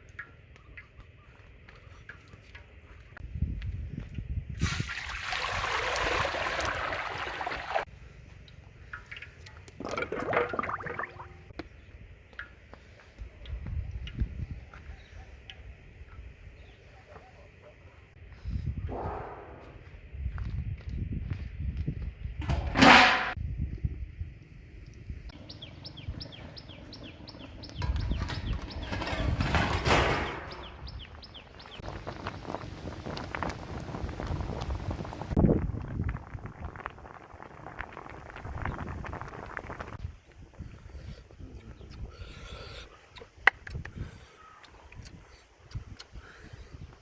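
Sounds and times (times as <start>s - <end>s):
water pouring: 4.6s - 7.9s, 8.9s - 11.5s
small bird chirping: 24.8s - 28.9s
utensils clattering: 27.8s - 30.8s.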